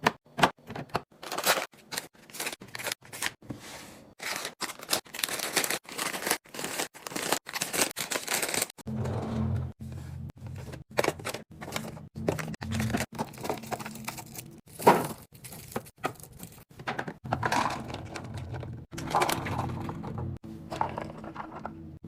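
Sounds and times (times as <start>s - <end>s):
food containers clicking and knocking: 0.0s - 1.6s, 14.8s - 22.0s
fridge hum: 8.8s - 22.0s.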